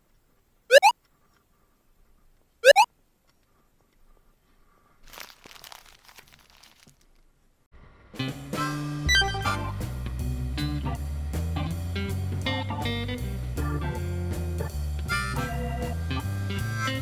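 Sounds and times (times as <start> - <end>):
faint crunching and rustling: 0.0 - 7.6.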